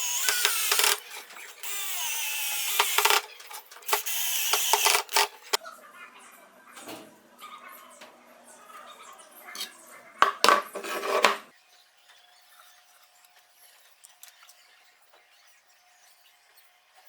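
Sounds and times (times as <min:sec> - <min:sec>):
hard objects clattering: 0:00.0 - 0:01.8, 0:02.6 - 0:05.6, 0:09.6 - 0:11.5.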